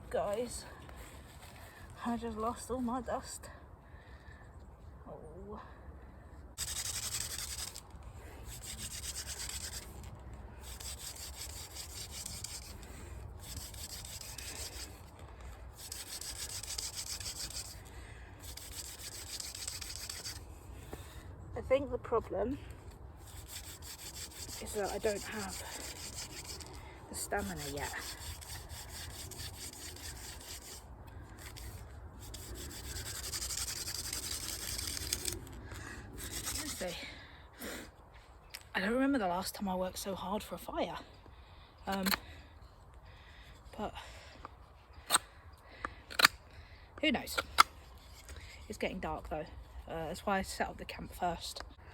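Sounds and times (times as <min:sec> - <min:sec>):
wooden spindle grinding in wood: 0:06.6 - 0:20.5, 0:23.2 - 0:37.0.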